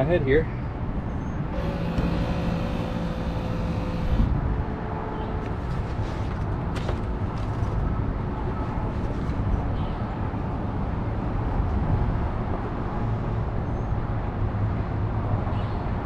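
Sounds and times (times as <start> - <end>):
air compressor humming: 1.4 - 4.4.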